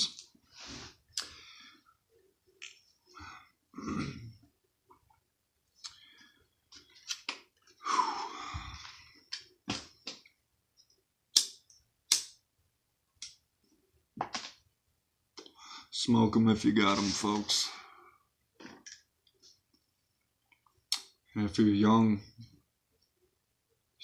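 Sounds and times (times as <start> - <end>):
man breathing: 7.8 - 9.3.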